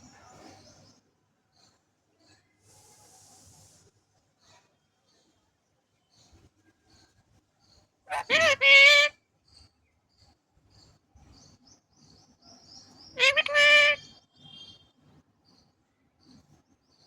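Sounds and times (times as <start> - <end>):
parrot calling harshly: 8.1 - 9.2, 13.2 - 14.1.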